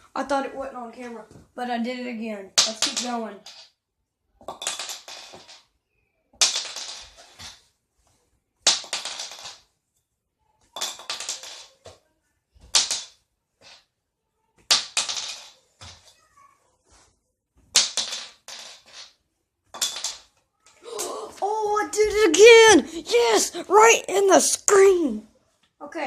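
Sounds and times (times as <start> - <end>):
shotgun shell clattering on hard surface: 4.4 - 5.7, 6.4 - 7.6, 8.6 - 9.7, 10.8 - 11.8, 14.7 - 16.0, 17.7 - 20.3.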